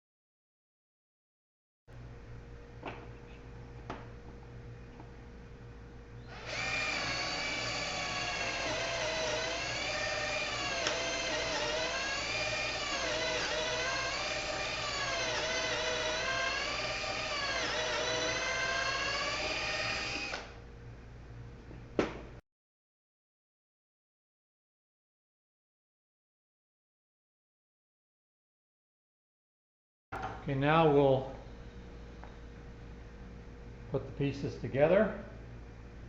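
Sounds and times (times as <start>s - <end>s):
electric drill drilling into wood: 6.3s - 20.6s.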